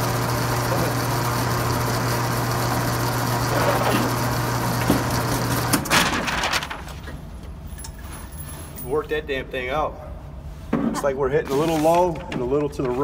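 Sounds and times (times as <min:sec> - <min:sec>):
electric motor running: 0:00.0 - 0:05.6.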